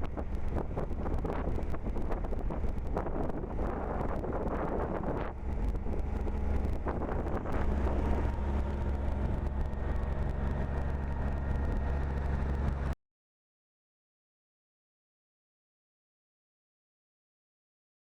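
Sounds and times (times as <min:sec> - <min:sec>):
water noise: 0:00.0 - 0:12.9
boat engine low hum: 0:00.0 - 0:13.0
rushing wind: 0:00.0 - 0:13.0.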